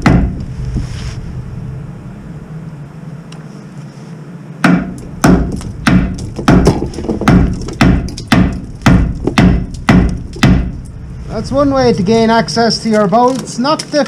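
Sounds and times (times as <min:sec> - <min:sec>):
hammer striking rusted steel: 0:00.0 - 0:00.4, 0:04.6 - 0:10.9.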